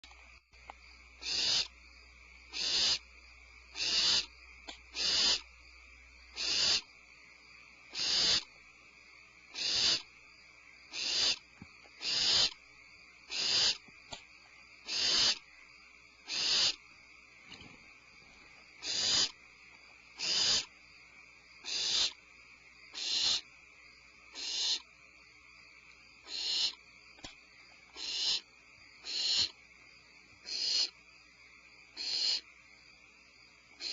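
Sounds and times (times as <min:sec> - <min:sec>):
barn owl calls: 0:01.2 - 0:01.8, 0:02.5 - 0:05.6, 0:06.3 - 0:06.9, 0:07.9 - 0:08.6, 0:09.5 - 0:10.2, 0:10.9 - 0:12.6, 0:13.2 - 0:13.9, 0:14.8 - 0:15.5, 0:16.2 - 0:19.4, 0:20.1 - 0:20.8, 0:21.6 - 0:22.3, 0:22.9 - 0:23.6, 0:24.3 - 0:24.9, 0:26.2 - 0:29.7, 0:30.4 - 0:31.0, 0:31.9 - 0:32.6.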